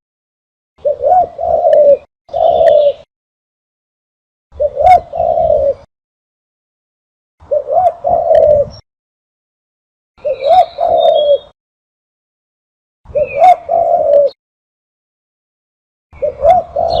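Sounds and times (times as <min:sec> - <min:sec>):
dove cooing: 0:00.8 - 0:03.1, 0:04.6 - 0:05.9, 0:07.4 - 0:08.8, 0:10.2 - 0:11.5, 0:13.1 - 0:14.4, 0:16.2 - 0:17.0.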